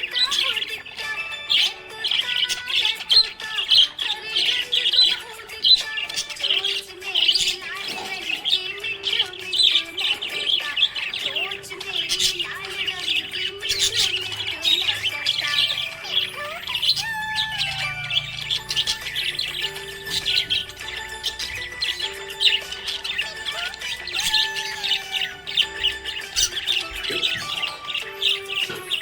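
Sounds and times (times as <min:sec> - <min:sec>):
background music: 0:00.0 - 0:29.0
budgies chirping: 0:00.0 - 0:29.0.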